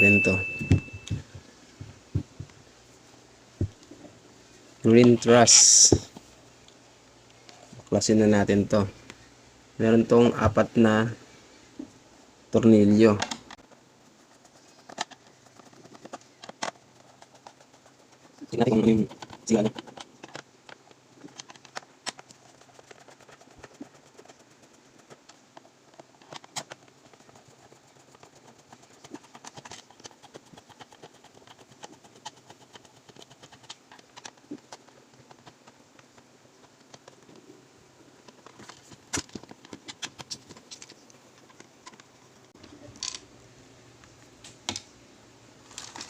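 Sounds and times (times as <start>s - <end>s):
plastic case handled: 14.8s - 24.4s, 38.2s - 42.1s, 45.7s - 46.0s.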